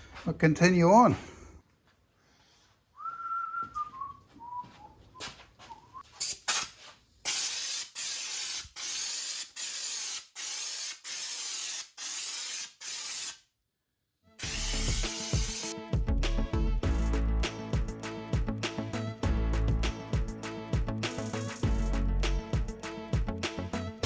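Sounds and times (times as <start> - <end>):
faint falling whistle: 3.0 - 6.1
spray gun hissing: 7.3 - 13.4, 14.4 - 15.8.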